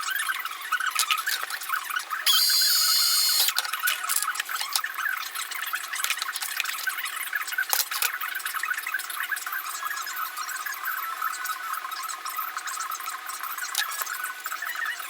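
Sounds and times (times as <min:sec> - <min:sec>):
power drill drilling: 0:02.3 - 0:03.6.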